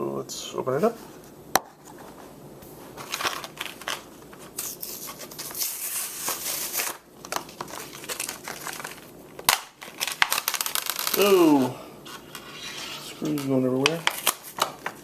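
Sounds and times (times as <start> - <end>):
packaging crinkling and tearing: 3.0 - 12.4, 13.2 - 15.0.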